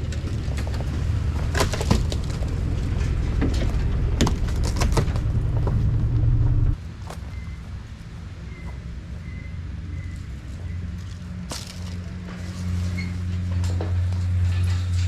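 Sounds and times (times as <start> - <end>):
branches cracking and snapping: 0.0 - 6.2, 11.5 - 12.8
truck engine running low: 0.0 - 11.4.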